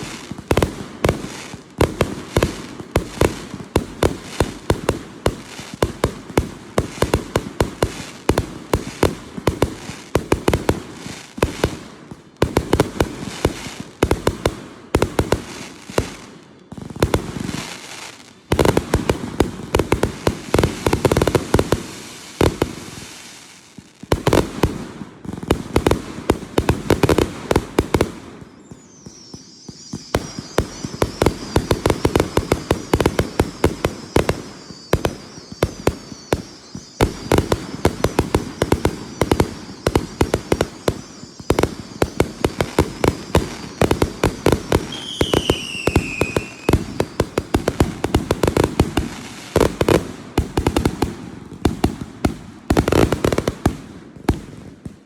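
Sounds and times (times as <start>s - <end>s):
fireworks crackling pops: 0.0s - 55.0s
high steady whistle: 28.3s - 48.5s.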